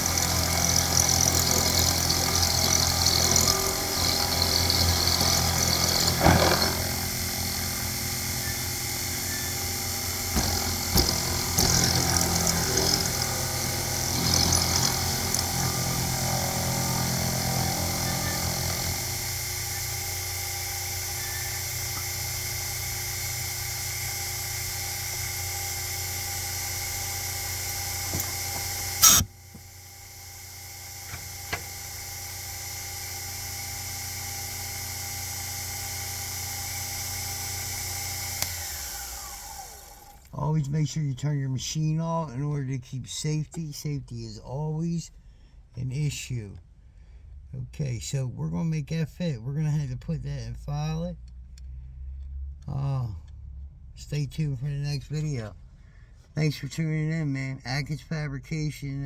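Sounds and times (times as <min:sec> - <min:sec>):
milling machine motor running: 0:00.0 - 0:40.3
end mill scraping and chattering: 0:00.0 - 0:40.7
sharp loud click: 0:29.0 - 0:29.3.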